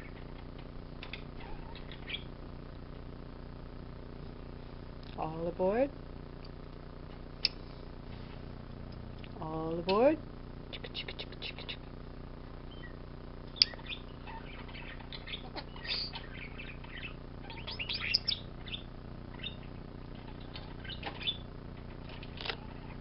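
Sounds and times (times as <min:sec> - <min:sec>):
starling chattering: 0:13.7 - 0:23.0.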